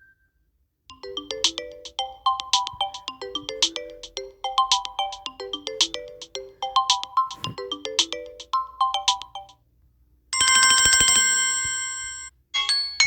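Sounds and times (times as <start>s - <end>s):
shimmering pulsing ringtone: 0.9s - 9.5s
chiming ringtone melody: 0.9s - 9.6s.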